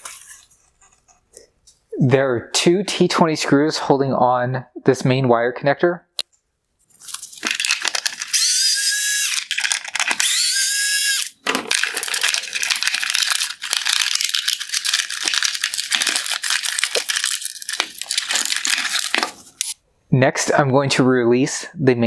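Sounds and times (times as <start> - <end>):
plastic parts clicking and rattling: 6.9 - 19.8
power screwdriver whining: 7.0 - 19.8.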